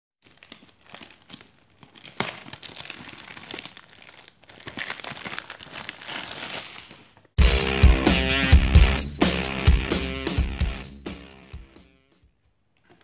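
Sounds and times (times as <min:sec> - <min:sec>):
packaging crinkling: 0:00.2 - 0:07.4.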